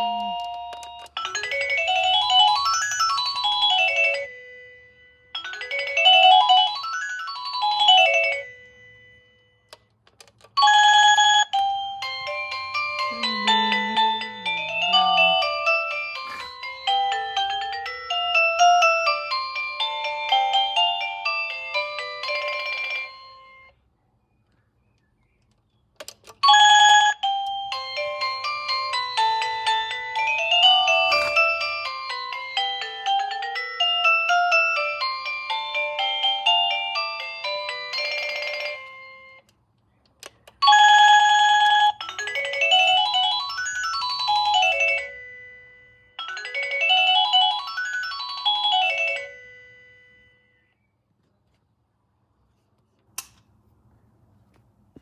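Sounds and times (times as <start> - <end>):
electronic doorbell chime melody: 0.0 - 9.7, 10.6 - 23.8, 26.4 - 39.5, 40.6 - 50.8.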